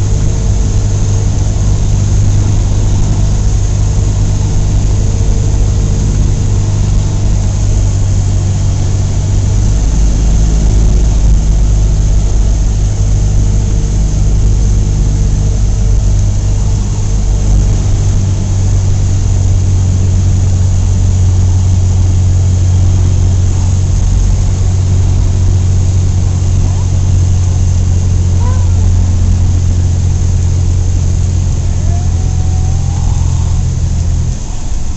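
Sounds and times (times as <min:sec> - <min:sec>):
light aircraft engine droning: 0:00.0 - 0:34.9.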